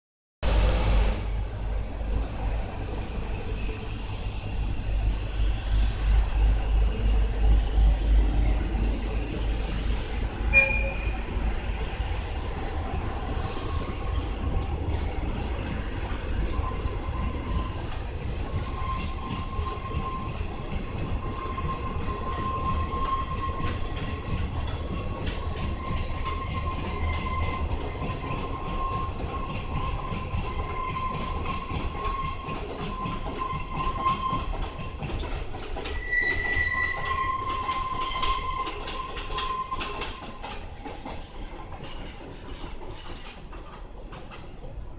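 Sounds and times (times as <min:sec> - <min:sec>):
diesel locomotive rumbling: 0:00.4 - 0:44.9
thin wheel squeal: 0:08.9 - 0:14.7, 0:15.9 - 0:40.6.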